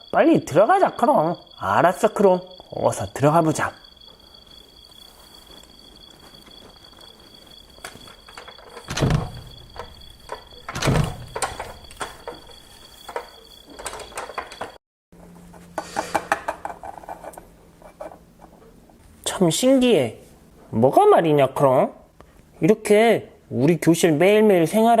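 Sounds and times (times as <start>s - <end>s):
steady high whine: 0.0s - 14.8s
door clicks and rattles: 8.3s - 14.8s
door thuds: 8.6s - 12.5s.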